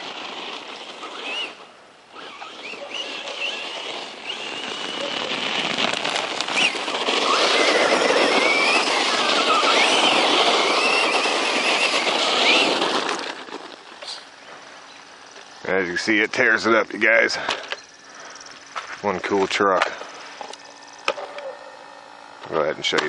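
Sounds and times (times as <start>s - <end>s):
rush of tyres: 0.0s - 15.8s
rc truck motor whining: 0.0s - 23.0s.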